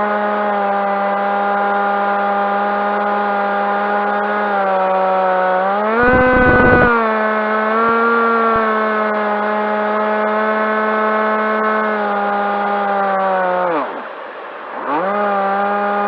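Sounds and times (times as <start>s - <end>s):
low rumble: 6.0s - 7.0s
model plane motor whine: 6.0s - 7.0s.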